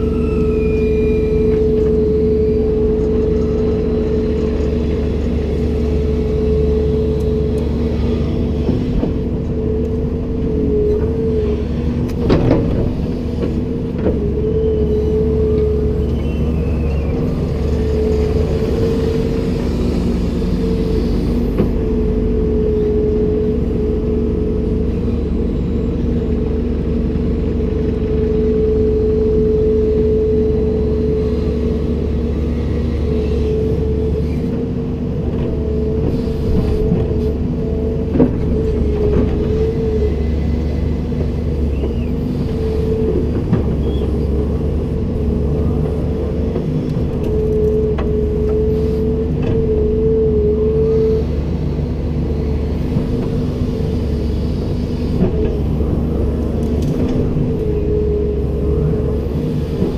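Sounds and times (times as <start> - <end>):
excavator diesel engine rumbling: 0.0 - 59.9.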